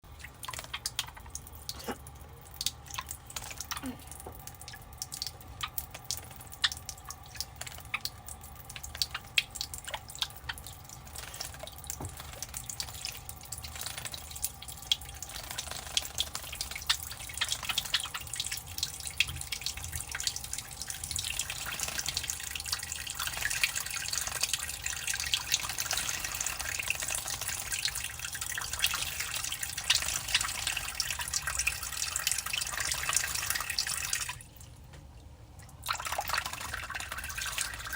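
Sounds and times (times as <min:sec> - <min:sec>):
birds splashing in water: 0:00.1 - 0:34.3
wings fluttering: 0:11.0 - 0:14.4, 0:15.2 - 0:16.8.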